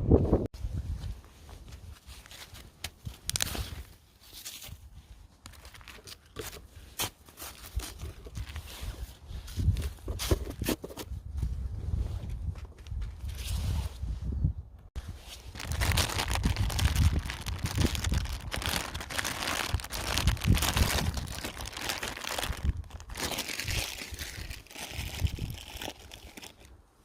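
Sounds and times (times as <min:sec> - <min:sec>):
wind buffeting microphone: 0:00.0 - 0:01.2, 0:08.4 - 0:25.9.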